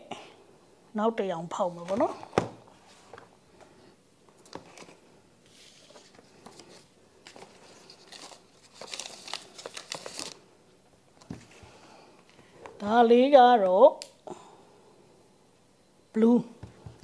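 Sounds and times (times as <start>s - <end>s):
packaging clicks and crinkling: 5.9s - 10.4s.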